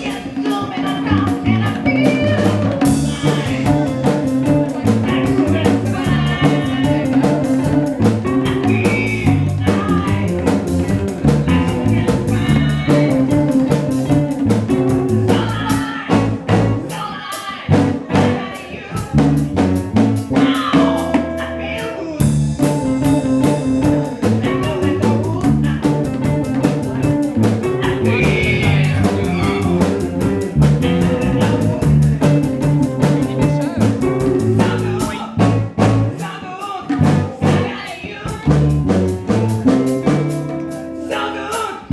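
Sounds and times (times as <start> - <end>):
person singing: 0.0 - 19.6, 20.2 - 41.9
band music: 0.0 - 41.9.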